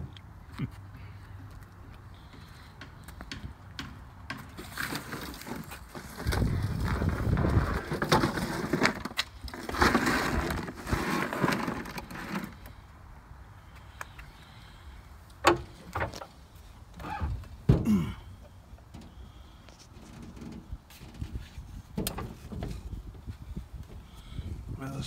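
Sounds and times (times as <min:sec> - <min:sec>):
lawnmower clattering and scraping: 0:04.4 - 0:12.7.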